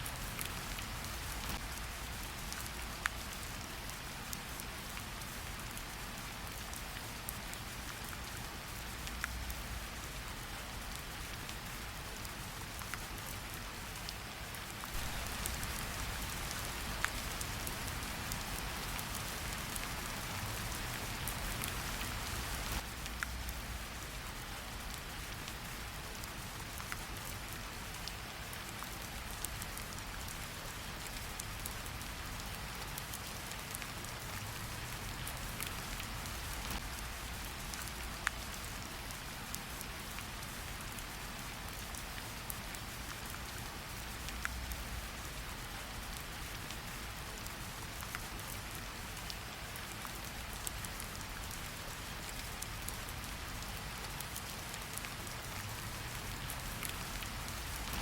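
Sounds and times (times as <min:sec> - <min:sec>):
steady rain: 0:00.0 - 0:58.0
wood fire crackling: 0:14.9 - 0:23.2, 0:56.4 - 0:58.0.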